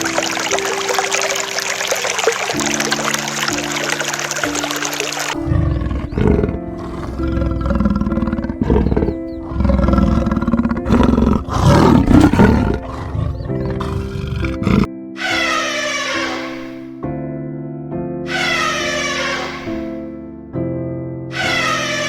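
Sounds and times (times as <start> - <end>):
background music with held tones: 0.0 - 7.8, 14.8 - 22.0
large animal roaring: 5.3 - 16.8.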